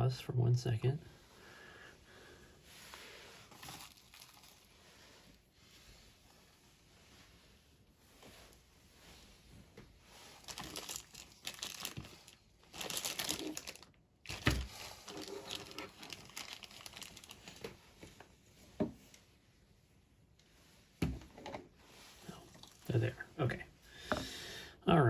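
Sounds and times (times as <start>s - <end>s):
crinkling and rustling: 3.4s - 19.6s, 20.4s - 23.2s.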